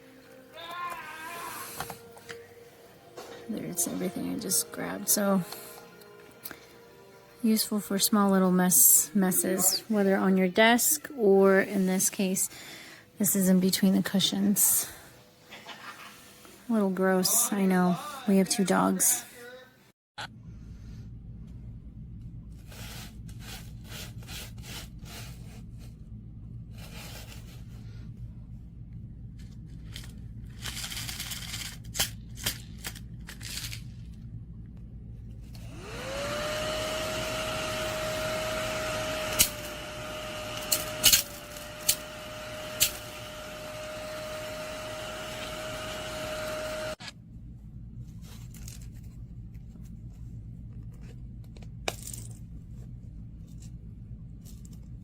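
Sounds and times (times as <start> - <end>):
small vacuum motor whine: 35.4 - 47.0.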